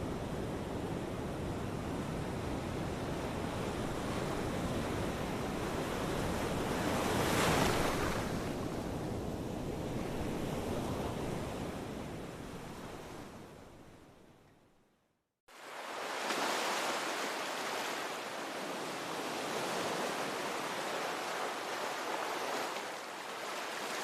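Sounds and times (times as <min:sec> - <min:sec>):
ocean waves rushing: 0:15.5 - 0:24.0.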